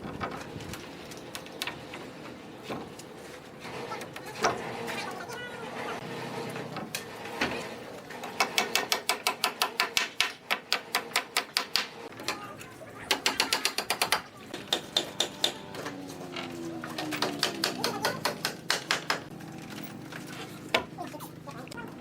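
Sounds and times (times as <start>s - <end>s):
tool strikes on wood: 8.2s - 12.0s, 13.1s - 15.9s, 17.0s - 19.3s.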